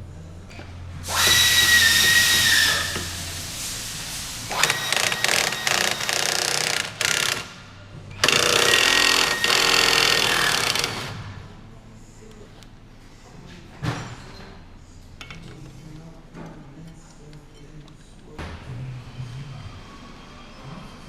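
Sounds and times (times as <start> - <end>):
hammering power tool: 1.0 - 3.2, 4.5 - 7.6, 8.2 - 11.3.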